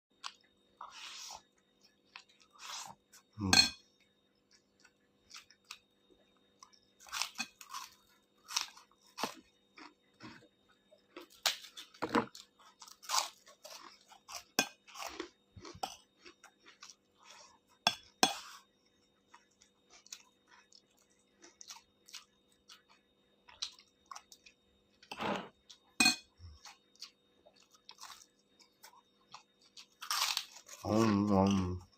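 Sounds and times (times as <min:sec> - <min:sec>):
wet chewing and smacking: 0:19.1 - 0:24.6, 0:25.6 - 0:31.9.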